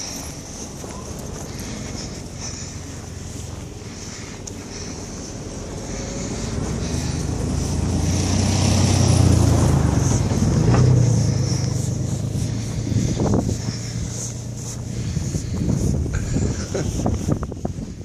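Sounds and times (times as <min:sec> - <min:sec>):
car driving past: 0:04.7 - 0:15.7.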